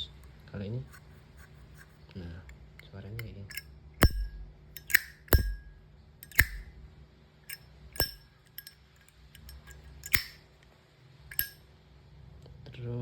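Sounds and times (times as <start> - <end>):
lighter lid clicking open and shut: 3.5 - 6.7, 7.5 - 8.8, 9.4 - 10.4, 11.3 - 11.6.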